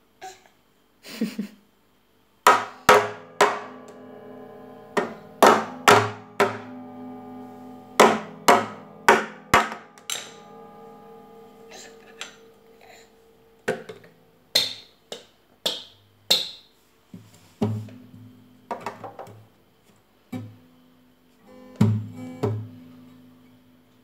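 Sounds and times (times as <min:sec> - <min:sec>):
hammer knocking on guitar: 0:02.5 - 0:13.0
guitar strings ringing: 0:02.5 - 0:15.1, 0:17.7 - 0:19.7, 0:20.6 - 0:24.0.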